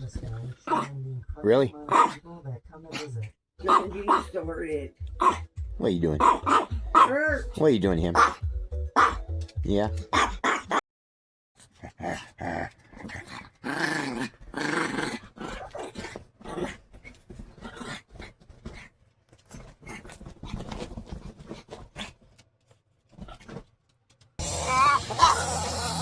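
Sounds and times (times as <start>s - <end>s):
small dog growling: 0.3s - 2.2s, 2.9s - 4.4s, 5.2s - 5.5s, 6.2s - 7.1s, 9.0s - 9.3s, 11.6s - 18.9s, 19.5s - 22.3s.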